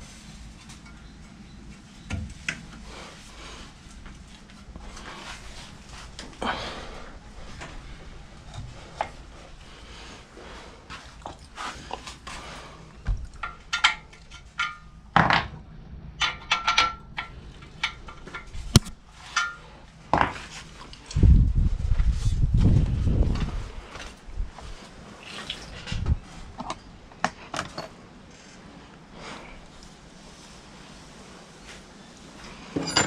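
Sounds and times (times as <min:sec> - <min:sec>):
metal parts and tools clinking: 0:16.2 - 0:19.7, 0:32.7 - 0:33.0.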